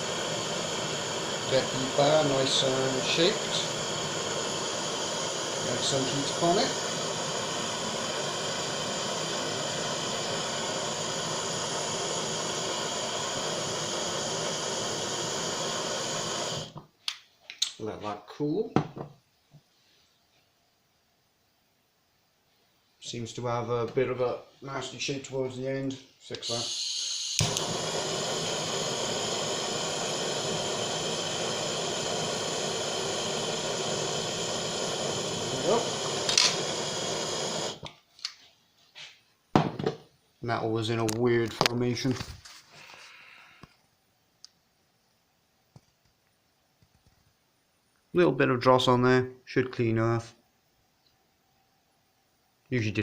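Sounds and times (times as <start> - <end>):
blowtorch flame hissing: 0.0 - 16.8, 26.4 - 37.9.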